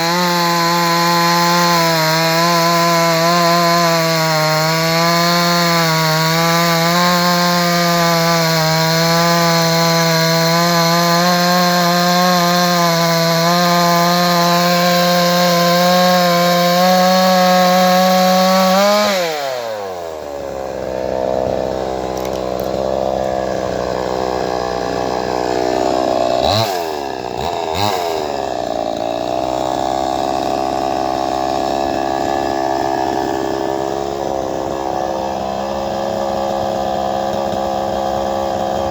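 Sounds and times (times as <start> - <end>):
chainsaw engine running: 0.0 - 38.9.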